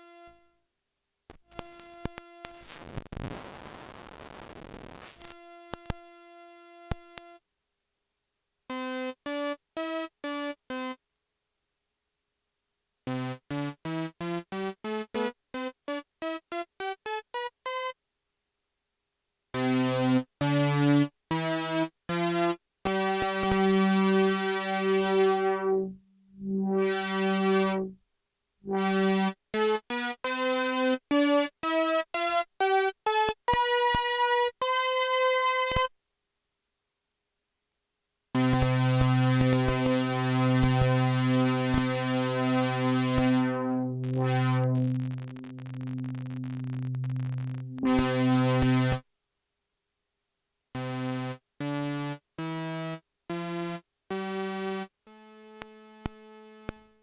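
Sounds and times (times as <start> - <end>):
synthesizer notes and chords: 22.9 - 28.0, 28.7 - 29.4, 38.4 - 49.0.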